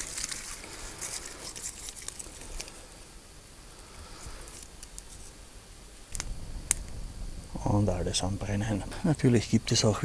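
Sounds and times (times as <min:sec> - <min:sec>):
kindling fire crackling: 0:00.0 - 0:10.0.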